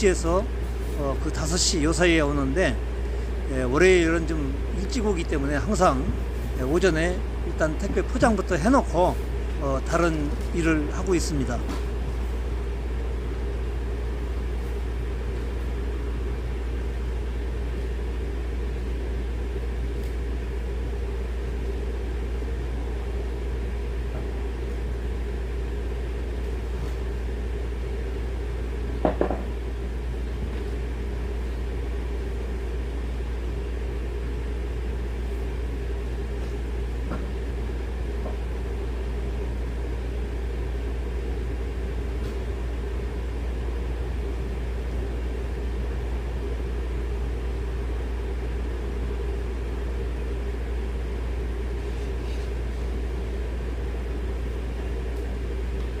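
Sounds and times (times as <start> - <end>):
low mechanical hum: 0.0 - 56.0
brief knock: 29.0 - 29.5.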